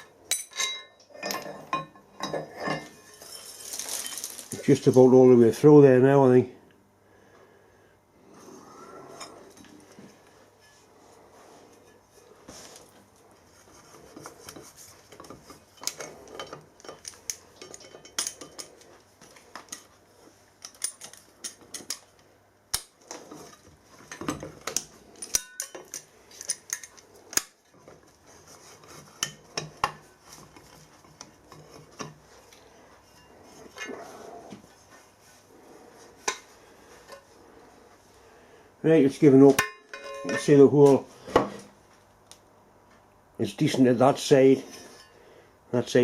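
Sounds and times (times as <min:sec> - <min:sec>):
light metallic clicks and clinks: 0:15.2 - 0:18.9, 0:24.1 - 0:27.5.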